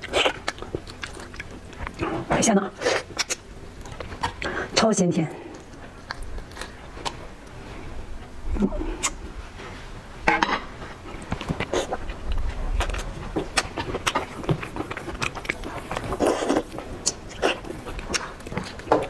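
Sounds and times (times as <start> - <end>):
shrimp being chewed: 0.0 - 4.8, 5.5 - 7.6, 10.8 - 19.0.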